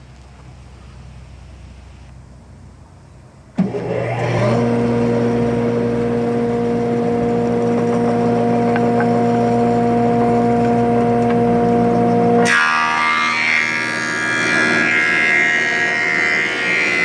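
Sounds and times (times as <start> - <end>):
planer motor whining and humming: 3.6 - 17.0.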